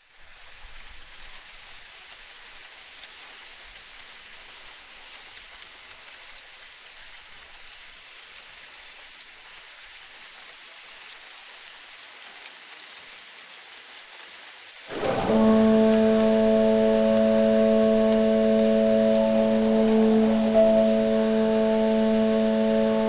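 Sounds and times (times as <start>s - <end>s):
steady hiss of water: 0.0s - 23.0s.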